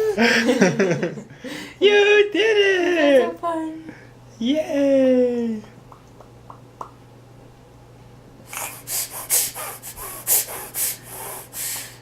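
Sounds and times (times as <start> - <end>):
baby puffing breath: 8.5 - 12.0.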